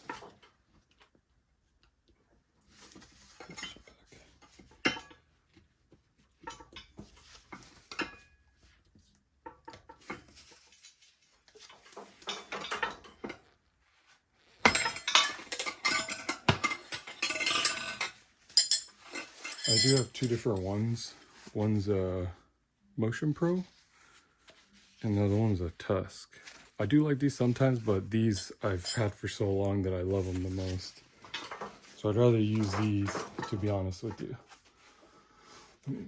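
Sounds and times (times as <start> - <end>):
metal tire irons clinking: 14.7 - 20.6, 28.7 - 29.2.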